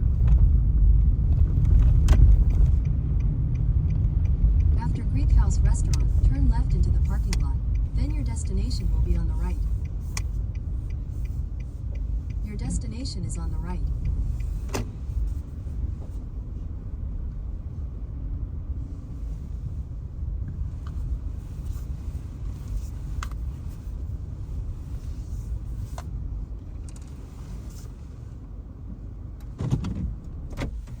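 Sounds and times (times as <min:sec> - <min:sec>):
car rumble from inside cabin: 0:00.0 - 0:31.0.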